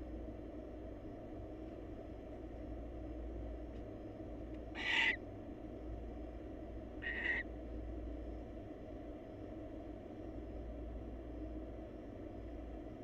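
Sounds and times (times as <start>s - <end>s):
steady low hum: 0.0s - 13.0s
barn owl screeching: 4.7s - 5.2s, 7.0s - 7.5s.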